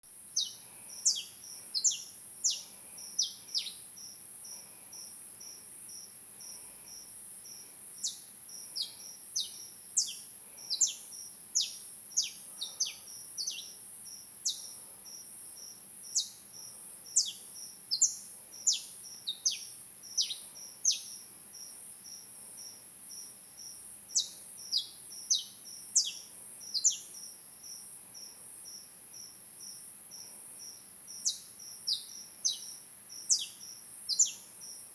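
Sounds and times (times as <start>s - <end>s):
cricket chirping: 0.1s - 34.9s
birds chirping: 0.4s - 3.9s, 7.6s - 11.0s, 11.6s - 13.8s, 14.4s - 14.8s, 17.2s - 21.1s.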